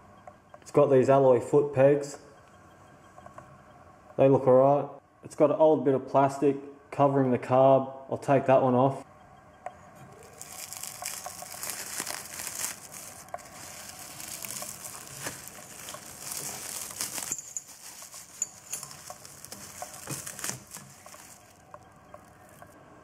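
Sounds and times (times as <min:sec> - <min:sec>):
plastic cover crinkling: 0:10.1 - 0:22.8.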